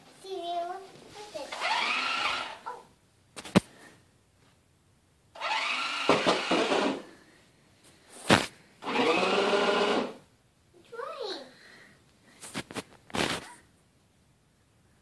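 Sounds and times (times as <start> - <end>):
toy truck electric motor: 1.5 - 2.6, 5.4 - 7.0, 8.8 - 10.2
toy truck bumping knocks: 6.0 - 7.0.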